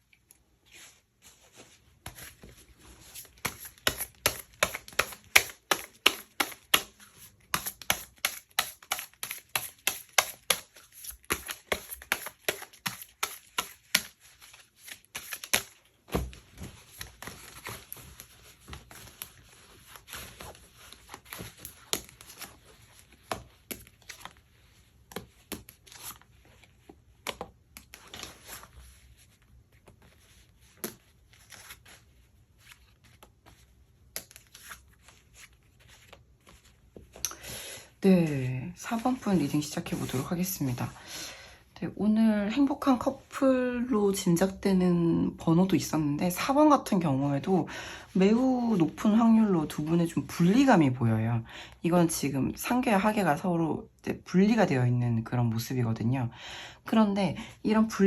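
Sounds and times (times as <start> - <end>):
cards being shuffled: 0.7 - 37.4.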